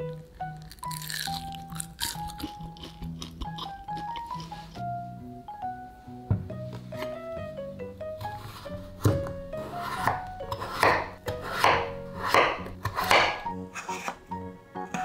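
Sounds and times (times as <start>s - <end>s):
background music: 0.0s - 15.0s
rasping scraping strokes: 8.2s - 14.2s.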